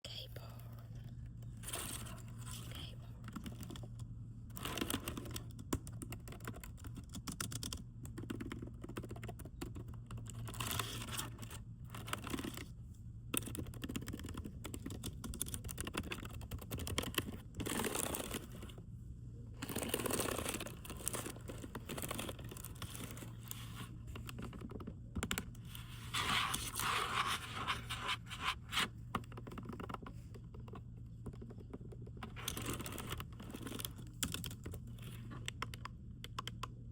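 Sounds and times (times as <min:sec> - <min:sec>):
typing on computer keyboard: 0:03.2 - 0:12.6, 0:13.3 - 0:18.4, 0:29.2 - 0:36.9.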